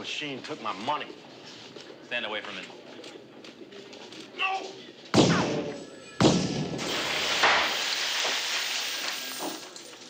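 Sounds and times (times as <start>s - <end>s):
loud gunshot-like bang: 5.2s - 7.8s
glass and debris crashing: 6.8s - 10.0s.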